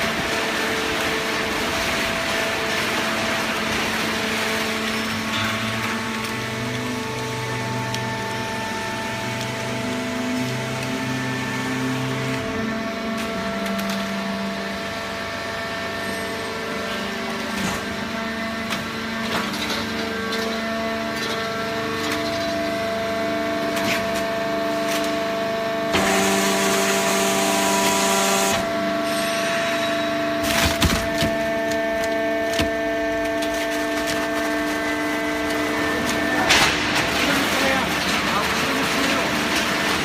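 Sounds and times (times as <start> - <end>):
baler machine hum: 0.0 - 40.0
cardboard clicks and cracks: 30.4 - 34.7.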